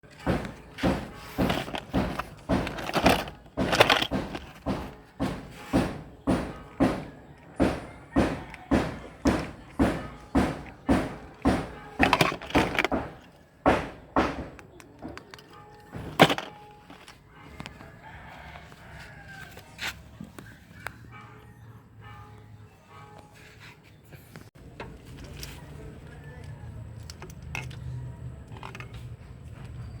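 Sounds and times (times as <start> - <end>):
heavy drum beat: 0.2 - 14.6.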